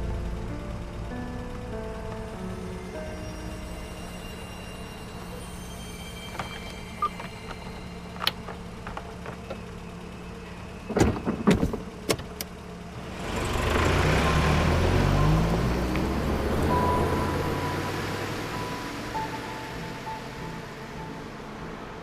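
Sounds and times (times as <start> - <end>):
car engine running: 0.0 - 5.4, 6.3 - 22.0.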